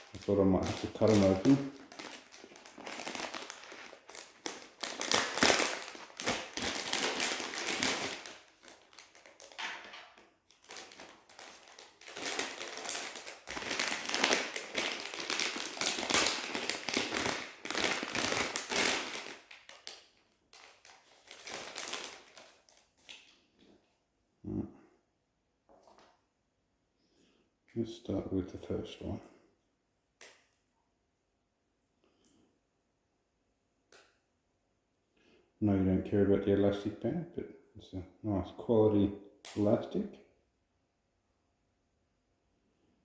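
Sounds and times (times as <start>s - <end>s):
plastic bags crinkling: 0.0s - 23.5s.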